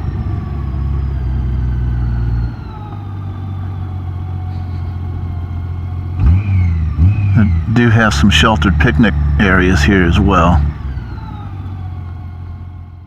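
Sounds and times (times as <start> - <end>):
motorcycle engine droning: 3.5 - 12.3.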